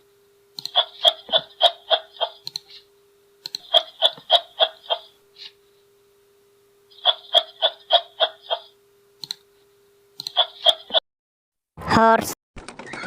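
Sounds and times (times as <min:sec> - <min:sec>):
kangaroo clucking calls: 0:00.6 - 0:02.8, 0:03.5 - 0:05.6, 0:07.0 - 0:08.8, 0:10.3 - 0:11.0.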